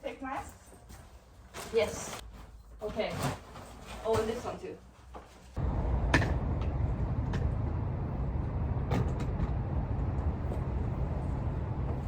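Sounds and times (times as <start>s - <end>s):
vehicle engine rumbling: 5.6s - 12.0s.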